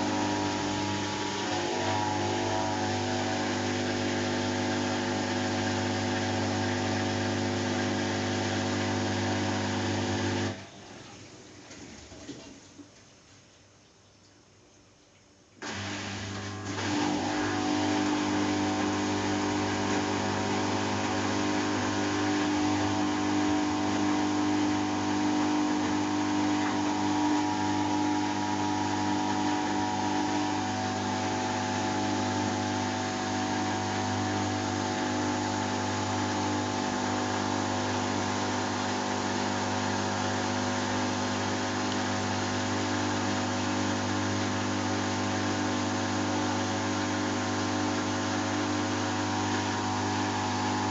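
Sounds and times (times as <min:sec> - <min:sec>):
washing machine running: 0:00.0 - 0:12.9, 0:15.6 - 0:50.9.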